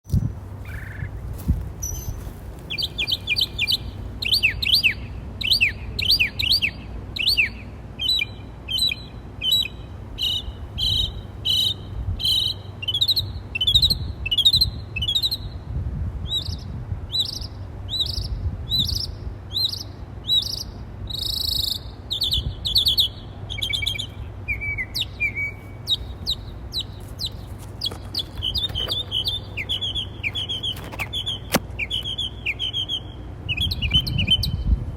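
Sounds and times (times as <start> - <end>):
birds chirping: 0.1 - 15.6, 16.4 - 34.7
low steady rumble: 0.1 - 34.9.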